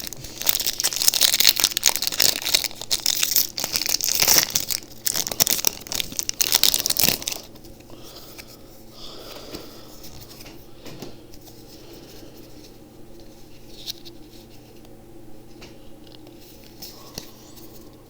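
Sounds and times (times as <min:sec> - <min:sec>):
foil wrapper tearing and crinkling: 0:00.0 - 0:07.6.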